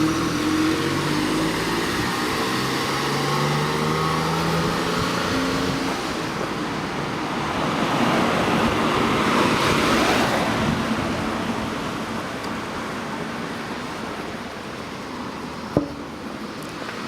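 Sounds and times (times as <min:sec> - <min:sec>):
vehicle passing by: 0:00.0 - 0:06.3.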